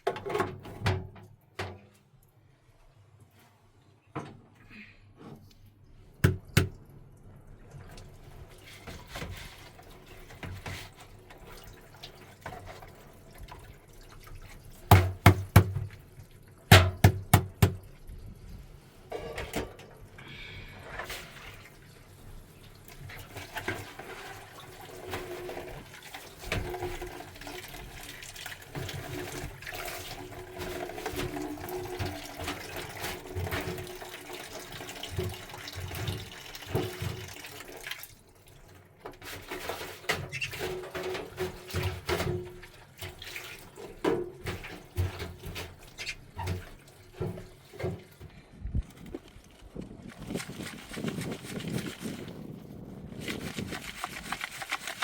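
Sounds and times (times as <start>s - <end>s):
water splashing and pouring: 6.2s - 55.0s
sharp knocks: 16.7s - 17.8s.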